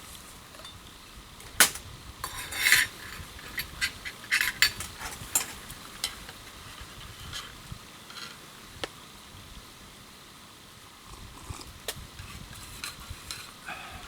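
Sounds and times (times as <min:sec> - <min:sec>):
metal utensils clinking: 0:00.4 - 0:08.4
utensil scraping cookware: 0:01.4 - 0:08.4.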